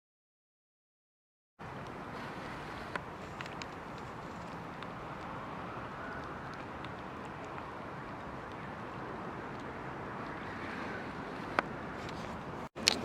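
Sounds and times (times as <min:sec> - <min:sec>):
outdoor background noise: 0:01.6 - 0:13.0.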